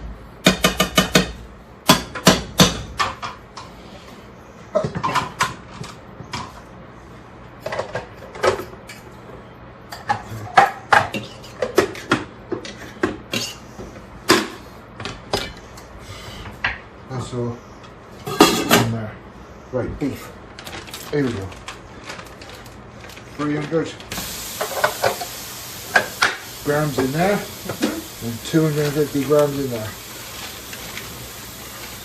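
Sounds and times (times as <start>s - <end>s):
utensil knocking on a pan: 0.4s - 2.8s.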